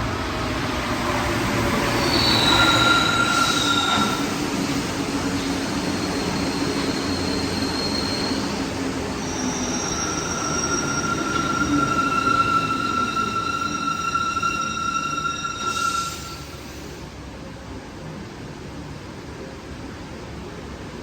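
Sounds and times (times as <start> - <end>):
metro train running on track: 0.0 - 21.0.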